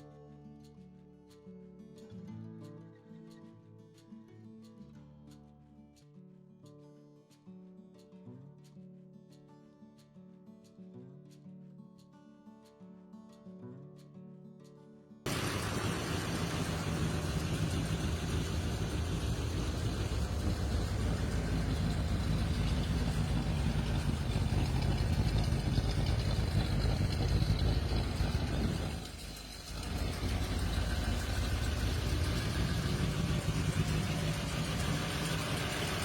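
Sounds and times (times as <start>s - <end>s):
car engine idling: 15.3s - 36.0s.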